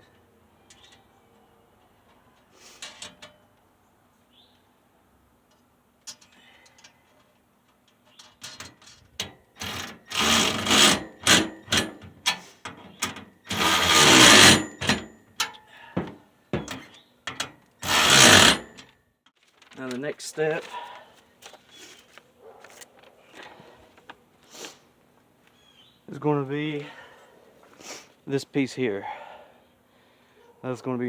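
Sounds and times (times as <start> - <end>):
metal parts clicking and knocking: 7.9 - 18.9
power driver whirring: 17.8 - 18.7.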